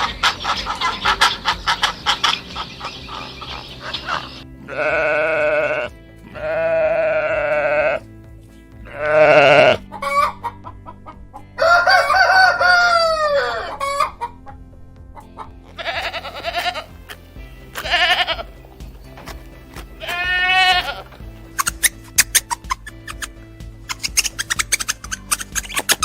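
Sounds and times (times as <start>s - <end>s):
quiet background music: 0.0s - 26.0s
rooster crowing: 11.6s - 14.2s.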